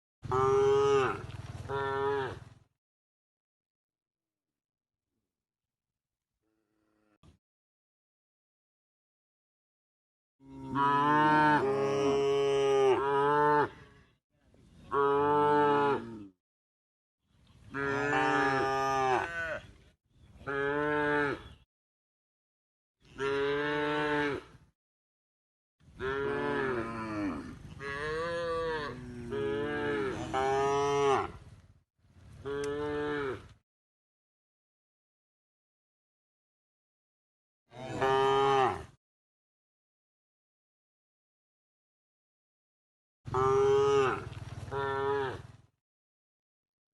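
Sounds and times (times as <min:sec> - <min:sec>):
cow mooing: 0:00.2 - 0:02.5, 0:06.4 - 0:07.2, 0:10.4 - 0:14.1, 0:14.9 - 0:16.3, 0:17.7 - 0:19.7, 0:20.4 - 0:21.6, 0:23.0 - 0:24.6, 0:26.0 - 0:31.4, 0:32.4 - 0:33.6, 0:37.7 - 0:39.0, 0:43.3 - 0:45.6.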